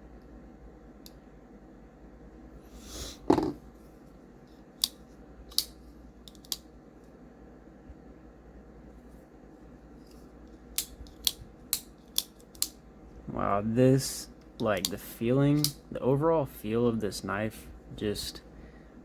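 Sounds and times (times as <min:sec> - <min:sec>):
folding knife snapping: 0:04.8 - 0:06.6, 0:10.8 - 0:12.8.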